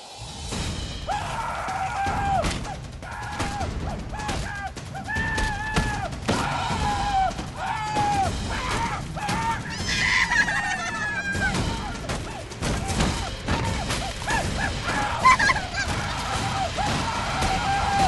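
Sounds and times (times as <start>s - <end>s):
sharp bangs: 0.4s - 18.0s.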